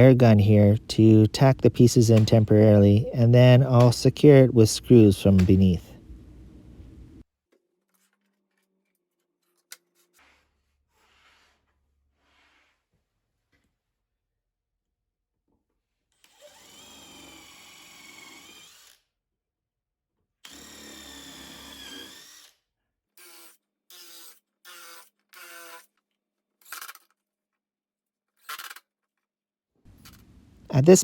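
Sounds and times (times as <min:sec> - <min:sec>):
power drill driving screws: 0:16.2 - 0:19.0, 0:20.4 - 0:22.6, 0:23.2 - 0:25.9.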